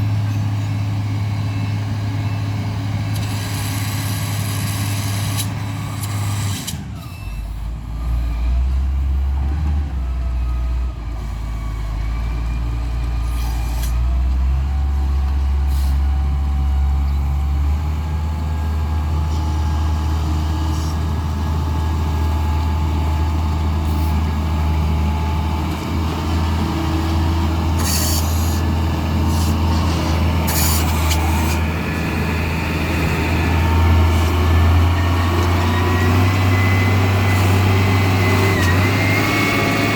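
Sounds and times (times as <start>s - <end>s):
diesel engine running: 0.0s - 39.9s
short air hisses: 27.8s - 28.6s, 29.3s - 29.6s, 30.5s - 31.6s.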